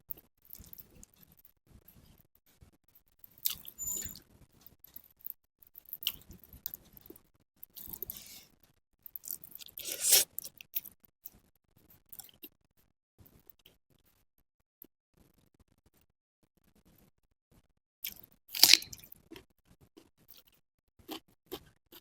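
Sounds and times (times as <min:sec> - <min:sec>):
chewing and biting food: 0:09.6 - 0:10.3, 0:18.1 - 0:22.0.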